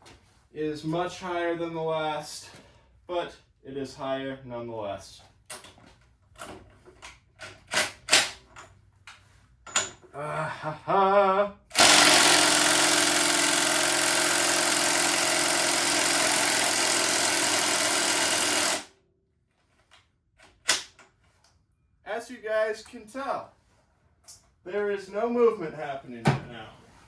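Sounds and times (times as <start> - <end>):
impact wrench hammering: 11.7 - 18.9.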